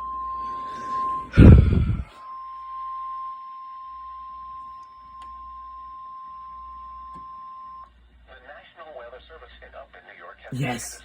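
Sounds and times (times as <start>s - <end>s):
emergency alert beep tone: 0.0s - 4.7s
loud rumbling thump: 1.4s - 2.1s.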